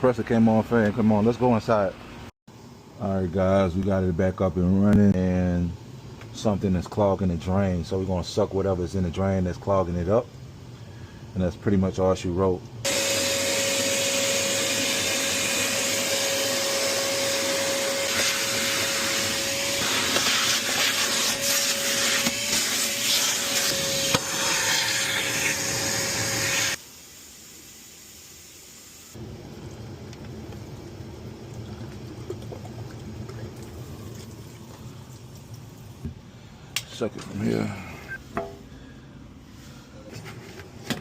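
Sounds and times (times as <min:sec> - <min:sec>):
vacuum whining: 0:12.8 - 0:26.8.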